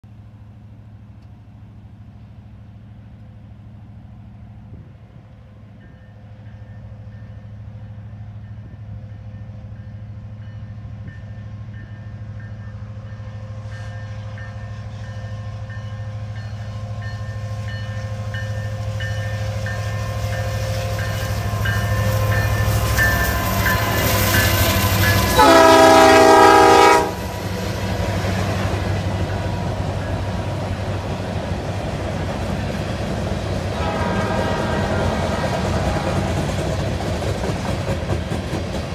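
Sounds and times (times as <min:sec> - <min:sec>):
diesel locomotive engine rumble: 0:00.0 - 0:38.9
train wheel and rail noise: 0:00.0 - 0:38.9
train air horn blast: 0:25.2 - 0:27.4, 0:33.7 - 0:36.7.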